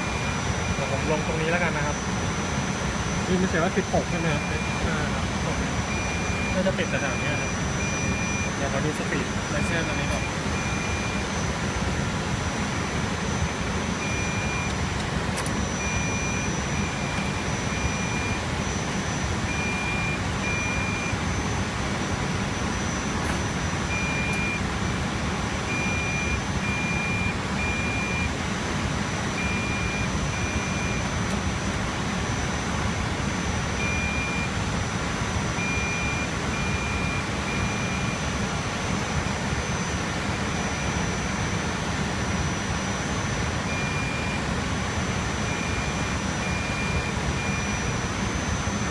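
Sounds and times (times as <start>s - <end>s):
thin high whine: 0.0s - 25.0s, 29.2s - 48.9s
server cooling fans rushing: 0.0s - 48.9s
short high beeps: 2.7s - 11.4s, 13.3s - 14.8s, 15.6s - 18.4s, 19.5s - 21.2s, 22.8s - 24.6s, 33.8s - 34.6s, 43.1s - 44.4s, 45.5s - 48.8s.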